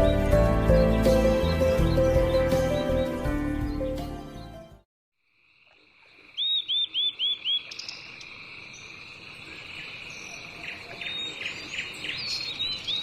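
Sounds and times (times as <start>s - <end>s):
bird chirps: 6.2s - 13.0s.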